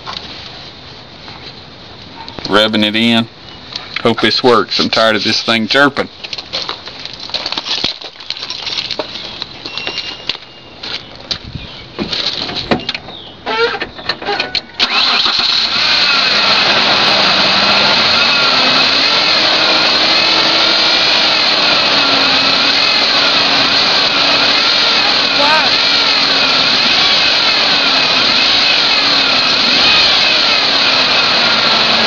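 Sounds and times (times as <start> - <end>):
engine cranking and running: 13.5 - 32.0
wavering whine: 14.8 - 32.0.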